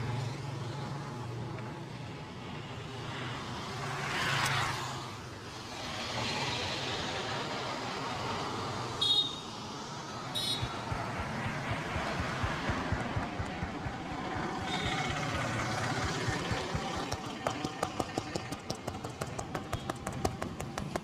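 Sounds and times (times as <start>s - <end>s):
street traffic noise: 0.0s - 21.0s
vehicle passing: 9.6s - 19.4s.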